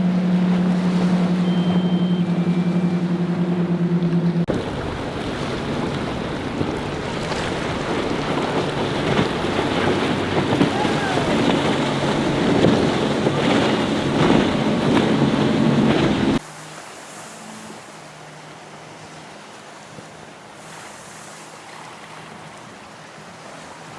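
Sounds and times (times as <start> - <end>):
quiet surf: 0.0 - 23.3
low engine hum: 0.0 - 23.9
water rushing and splashing: 0.0 - 23.9
wind noise on microphone: 4.5 - 16.4.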